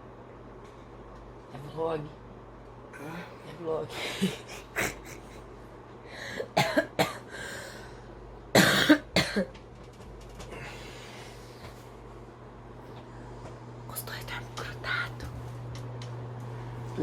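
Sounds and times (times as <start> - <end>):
person coughing: 6.4 - 7.3, 8.6 - 9.5.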